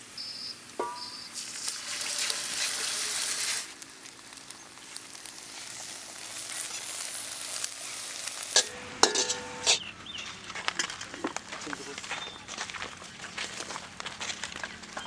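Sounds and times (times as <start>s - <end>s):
food sizzling in oil: 0.0s - 9.8s.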